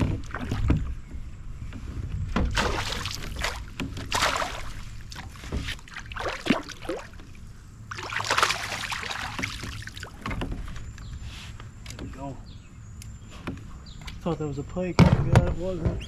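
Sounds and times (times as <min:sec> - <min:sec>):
water splashing: 0:02.6 - 0:10.3.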